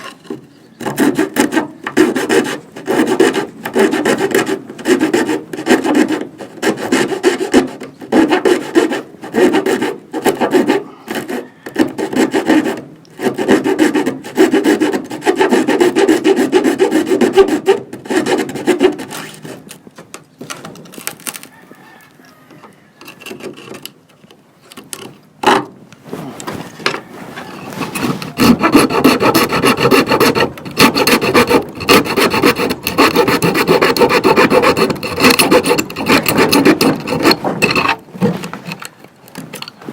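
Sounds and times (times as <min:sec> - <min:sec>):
hand saw cutting wood: 0:00.0 - 0:19.8, 0:27.4 - 0:39.0.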